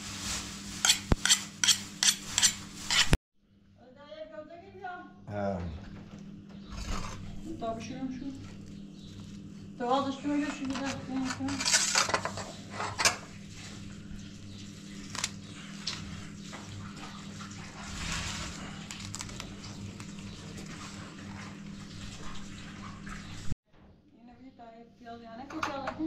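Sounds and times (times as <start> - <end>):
objects clattering and knocking: 10.4 - 13.3.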